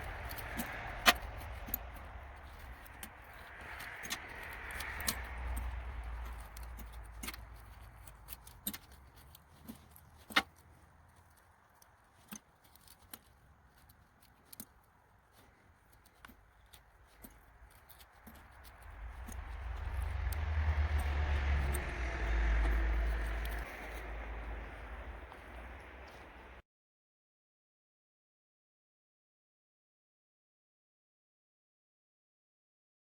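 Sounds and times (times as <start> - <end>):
low rumble: 0.0 - 8.4, 17.6 - 26.6.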